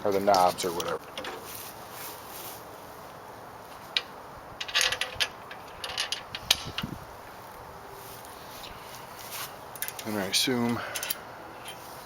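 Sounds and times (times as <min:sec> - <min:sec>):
hardware clicking and rattling: 0:04.0 - 0:06.9.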